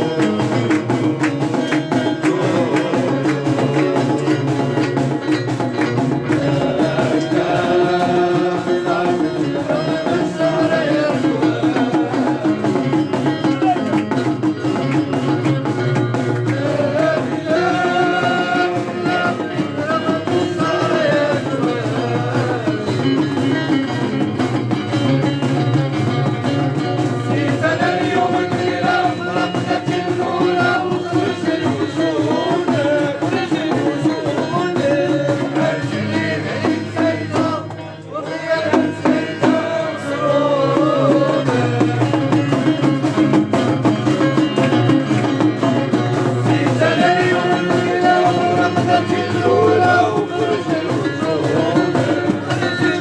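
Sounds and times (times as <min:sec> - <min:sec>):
folk music with hand drums: 0:00.0 - 0:53.0.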